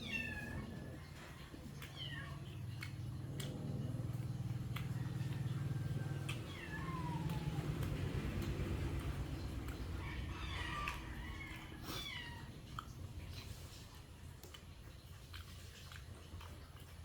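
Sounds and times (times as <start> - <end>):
cat meowing: 0.0 - 1.1, 1.8 - 2.6, 6.3 - 8.0, 10.0 - 12.6
steady low hum: 0.0 - 14.9.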